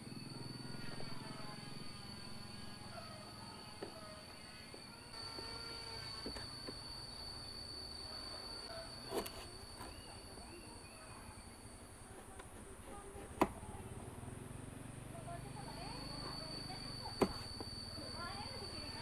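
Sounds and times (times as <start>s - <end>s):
crickets chirping: 0.0s - 19.0s.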